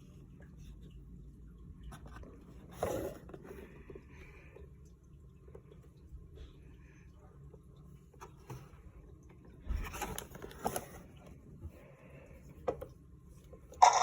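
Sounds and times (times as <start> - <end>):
plastic toy and packaging handled: 9.8 - 11.3, 13.8 - 14.0.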